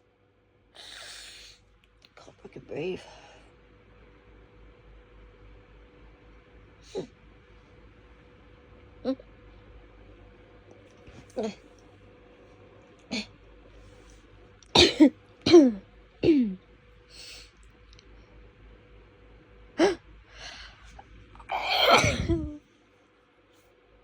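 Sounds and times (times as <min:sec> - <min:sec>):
person sneezing: 0:21.4 - 0:22.6.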